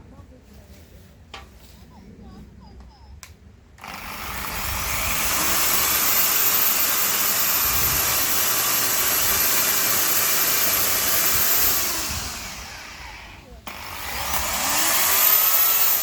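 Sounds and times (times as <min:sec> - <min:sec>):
electric fan motor whining: 0:03.8 - 0:16.0.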